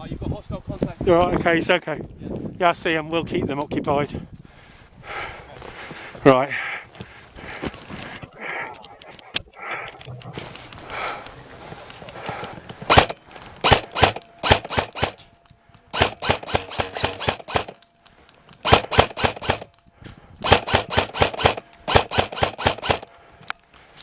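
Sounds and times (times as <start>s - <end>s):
airsoft gun firing bursts: 12.8s - 15.3s, 15.9s - 17.8s, 18.6s - 19.7s, 20.4s - 23.2s.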